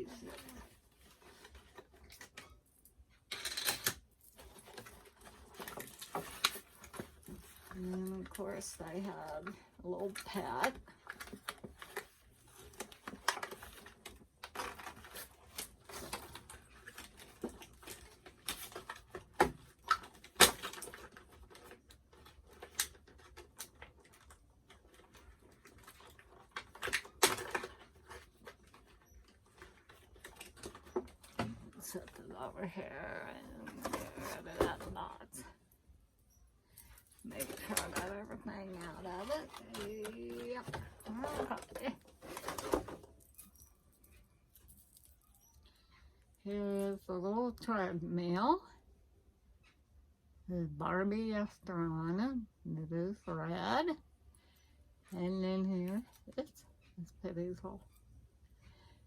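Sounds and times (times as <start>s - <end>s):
packaging rustling and crinkling: 0.0s - 2.7s, 3.9s - 35.4s, 36.6s - 45.8s
plastic accessories clicking and tapping: 0.1s - 32.4s
packaging rustle: 36.8s - 45.8s.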